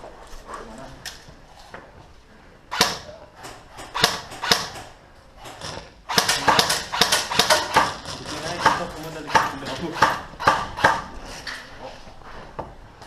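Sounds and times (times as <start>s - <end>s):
airsoft guns firing: 2.7s - 11.1s.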